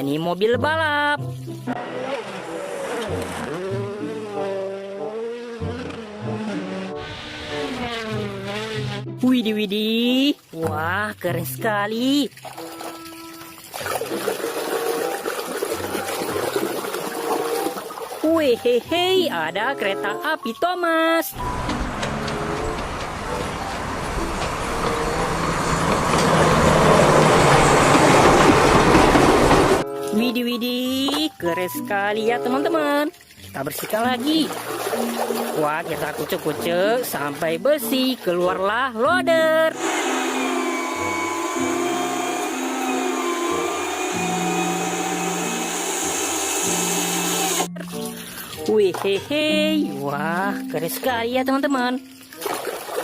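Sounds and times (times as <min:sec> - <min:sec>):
low stepping tones: 0:21.4 - 0:29.8
train running on rails: 0:21.4 - 0:29.8, 0:39.8 - 0:47.6.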